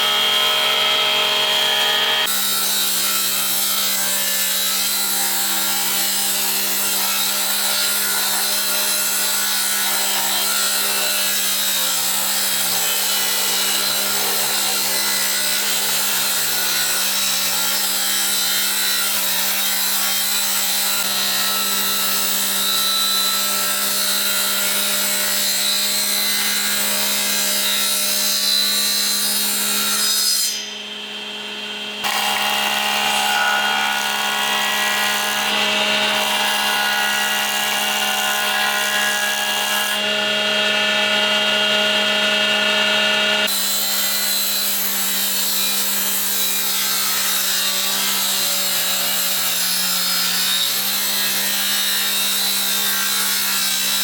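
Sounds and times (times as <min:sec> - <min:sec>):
power saw cutting wood: 0:00.0 - 0:54.0.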